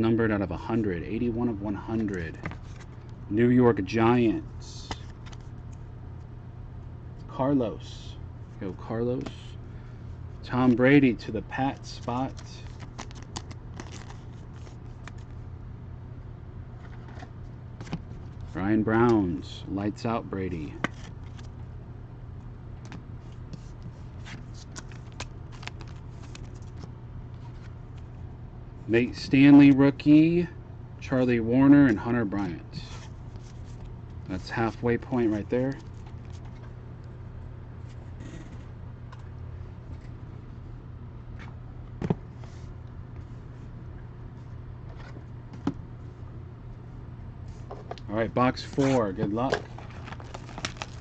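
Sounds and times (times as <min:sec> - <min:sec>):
steady low hum: 0:00.0 - 0:51.0
cards clicking and rustling: 0:12.0 - 0:15.3, 0:24.3 - 0:26.9, 0:48.6 - 0:51.0.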